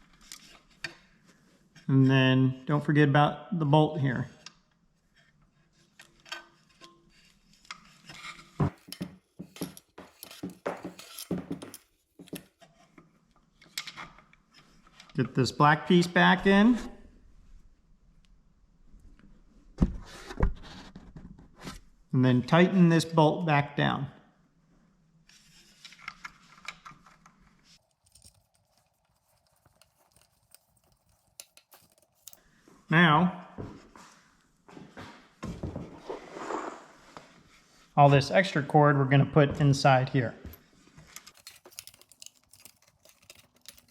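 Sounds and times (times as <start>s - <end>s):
small metal parts clinking: 27.8s - 32.4s, 41.2s - 43.9s.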